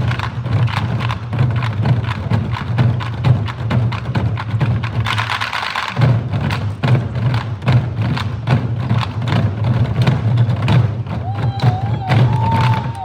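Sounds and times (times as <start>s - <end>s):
deep drum thuds: 6.0s - 12.9s.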